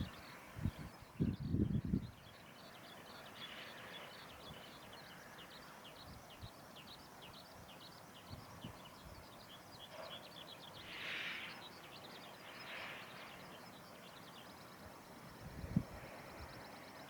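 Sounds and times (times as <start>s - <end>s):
hiss: 10.8s - 11.8s, 12.4s - 13.4s.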